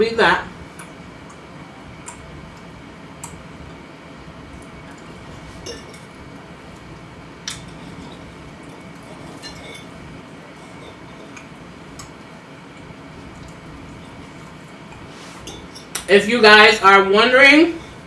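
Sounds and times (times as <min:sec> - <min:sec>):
cutlery clinking on a plate: 0:05.6 - 0:06.1, 0:09.2 - 0:09.9, 0:15.4 - 0:16.1.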